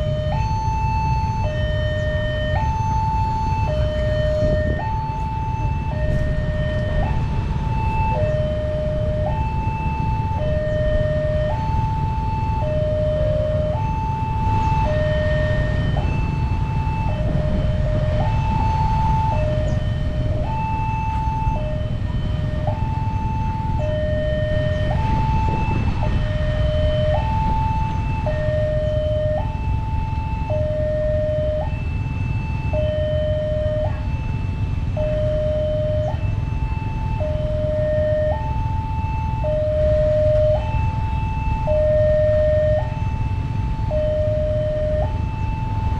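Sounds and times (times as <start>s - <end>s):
level crossing warning siren: 0.0s - 45.9s
steady low rumble: 0.0s - 45.9s.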